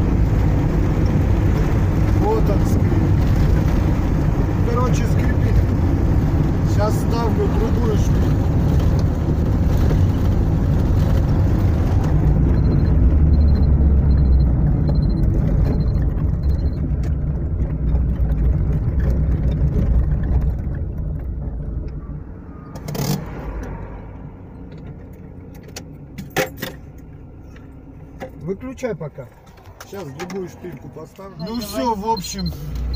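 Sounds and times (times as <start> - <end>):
car engine rumbling: 0.0 - 32.9
short high beeps: 31.3 - 32.9.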